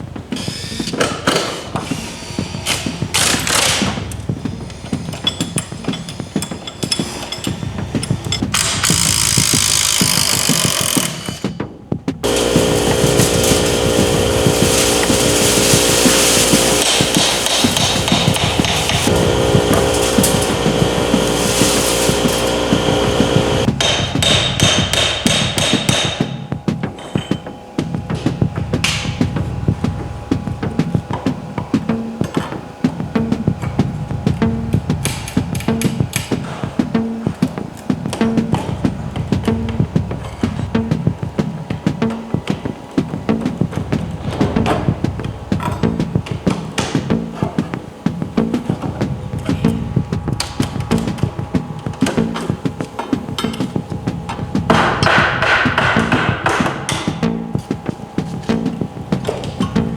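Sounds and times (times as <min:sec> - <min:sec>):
hand tools clicking and knocking: 0:05.1 - 0:26.4, 0:50.4 - 0:59.9
steady hum: 0:12.2 - 0:24.3, 0:27.7 - 0:59.9.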